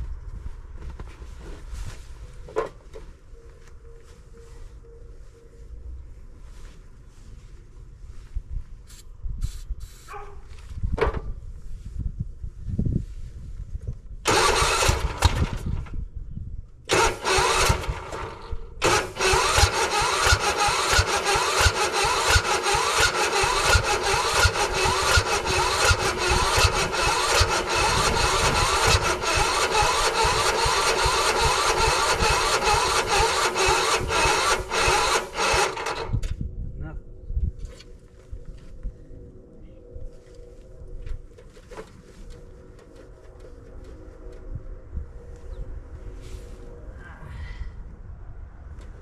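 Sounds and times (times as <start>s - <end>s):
engine cranking with starter: 14.3s - 15.9s, 16.9s - 36.3s.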